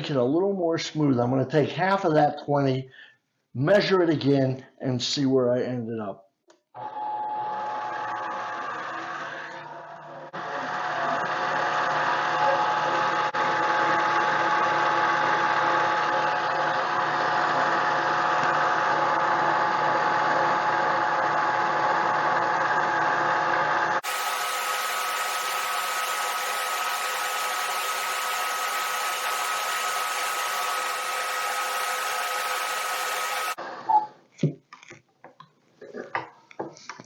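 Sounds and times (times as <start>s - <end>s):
lathe motor whine: 6.8s - 33.6s.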